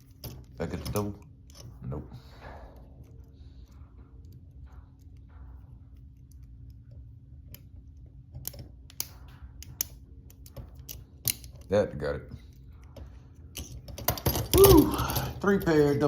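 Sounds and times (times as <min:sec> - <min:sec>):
lock picks clicking and scraping: 0:00.0 - 0:01.8, 0:06.1 - 0:11.7, 0:12.5 - 0:16.0.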